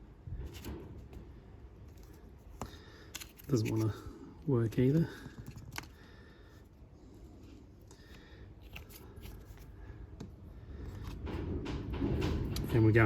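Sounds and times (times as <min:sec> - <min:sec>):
light scratching and rustling: 0:00.4 - 0:04.2.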